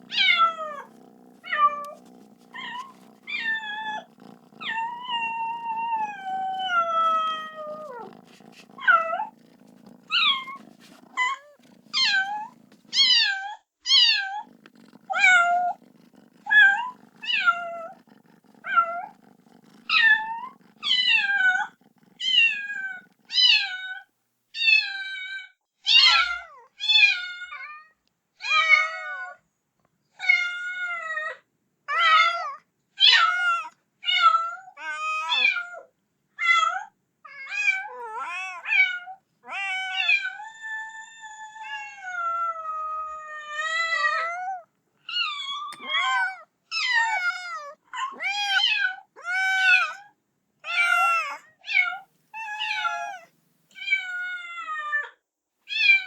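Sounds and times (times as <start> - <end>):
faint low hum: 0.0 - 13.2
kitten meowing: 0.0 - 14.4, 15.1 - 23.9, 50.7 - 54.5, 55.7 - 56.0.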